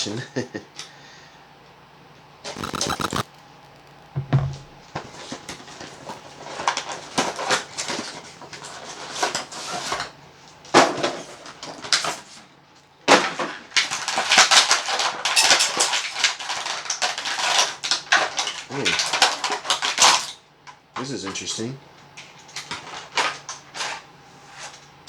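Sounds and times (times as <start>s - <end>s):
sharp clicks: 2.6s - 4.1s.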